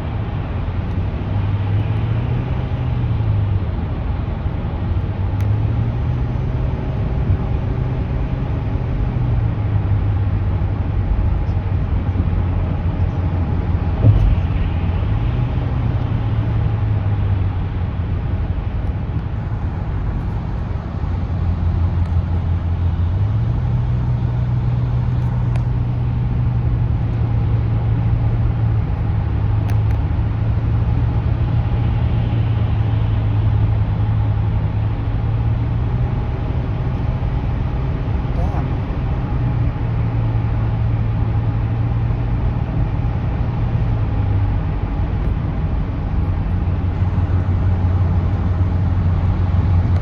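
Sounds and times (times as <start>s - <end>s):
car engine and road drone: 0.0s - 50.0s
brief knock: 14.0s - 14.7s.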